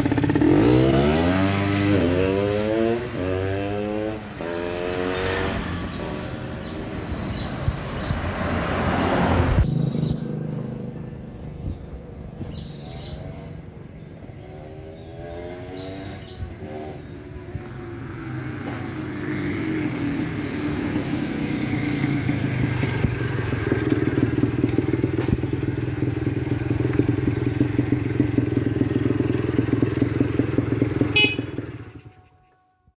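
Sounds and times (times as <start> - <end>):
two-stroke engine running: 0.0 - 5.3, 21.4 - 32.2.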